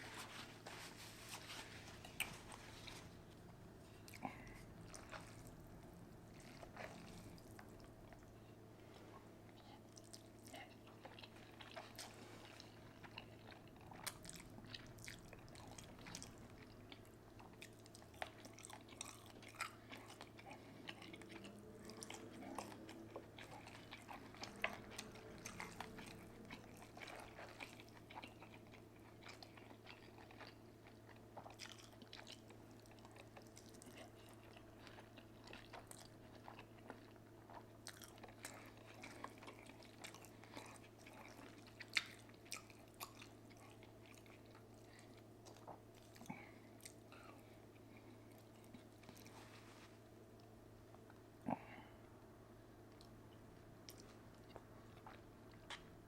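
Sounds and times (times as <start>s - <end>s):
steady low hum: 0.0s - 56.0s
person chewing and biting food: 9.9s - 49.3s.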